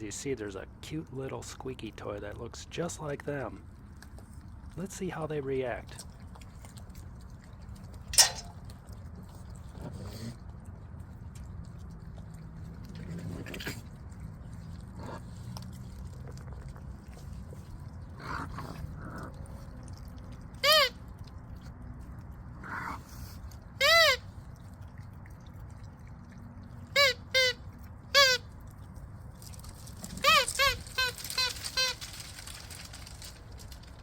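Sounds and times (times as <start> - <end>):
squeaky dog toy squeak: 20.6 - 21.1, 23.8 - 24.4, 26.9 - 28.5, 30.0 - 32.2
faint rustles: 29.4 - 34.0.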